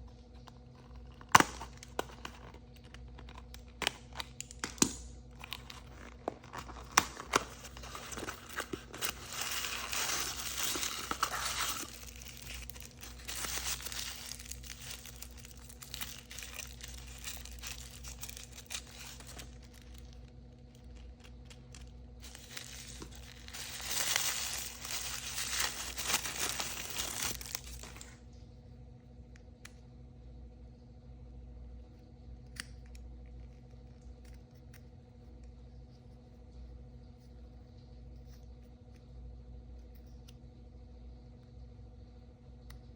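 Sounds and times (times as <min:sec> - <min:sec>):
packaging being torn and crinkled: 0:00.5 - 0:28.2.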